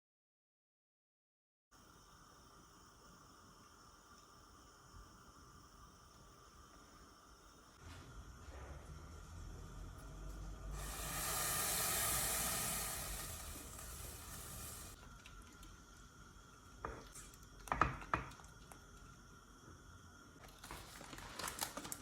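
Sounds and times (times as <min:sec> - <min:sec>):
steady hiss: 0:01.8 - 0:16.8.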